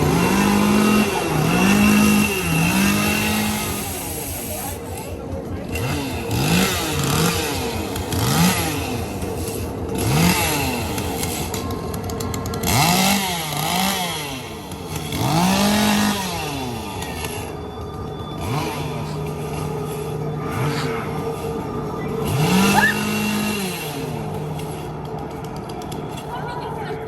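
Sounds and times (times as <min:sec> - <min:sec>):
chainsaw revving: 0:00.0 - 0:04.8, 0:05.6 - 0:17.6, 0:18.4 - 0:24.9.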